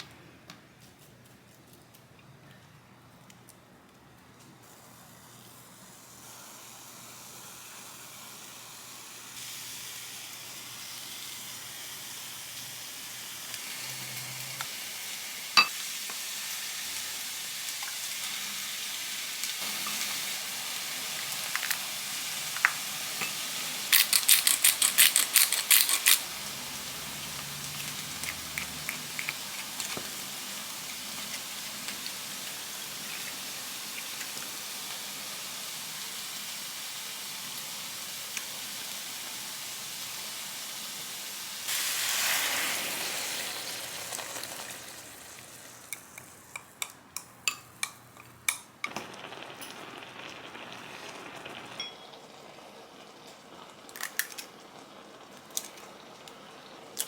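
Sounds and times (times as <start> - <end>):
food sizzling in a frying pan: 4.6 - 57.0.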